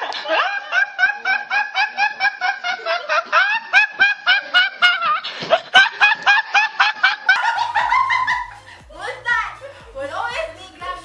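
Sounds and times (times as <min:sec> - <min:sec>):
rapid laughter: 0:00.0 - 0:08.8.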